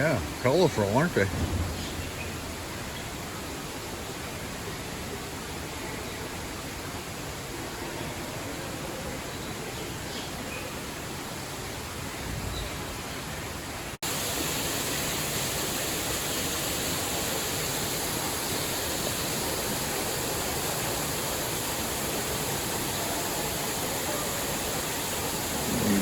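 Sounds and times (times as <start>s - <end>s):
waterfall rushing: 14.0s - 26.0s.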